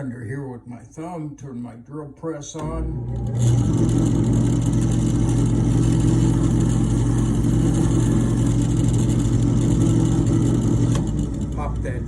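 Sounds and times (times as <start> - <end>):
drill press motor humming: 2.6 - 12.0.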